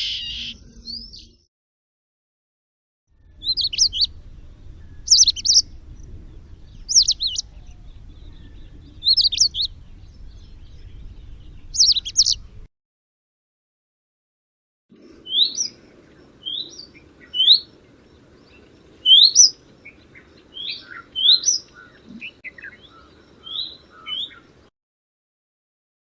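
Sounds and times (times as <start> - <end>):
faint low rumble: 3.1 - 12.7
bird warbling: 3.4 - 12.6, 15.0 - 24.7.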